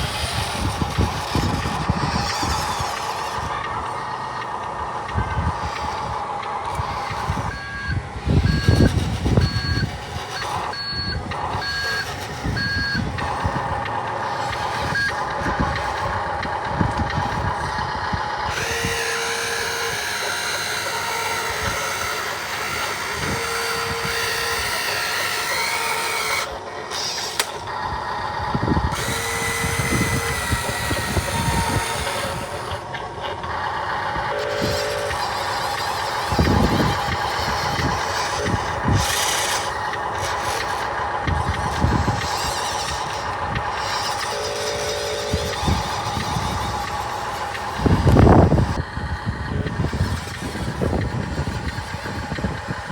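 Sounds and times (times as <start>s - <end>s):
motor whine: 0.0s - 52.9s
toy truck rumbling: 0.0s - 52.9s
reversing beeper: 7.2s - 13.5s.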